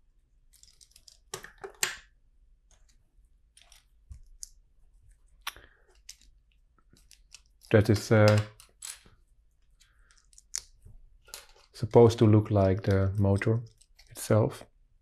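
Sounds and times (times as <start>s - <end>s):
plastic bricks clicking and rattling: 0.5s - 2.0s, 9.9s - 11.8s, 12.8s - 14.3s.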